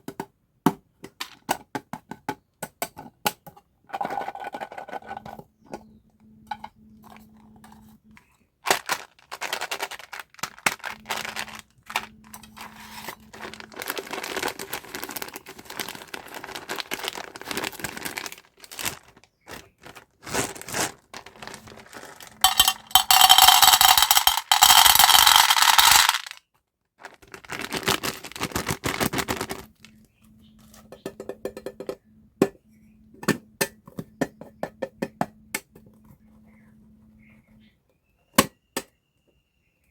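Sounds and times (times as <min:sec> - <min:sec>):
plastic wrappers crinkling: 0:08.6 - 0:26.4, 0:27.0 - 0:30.1.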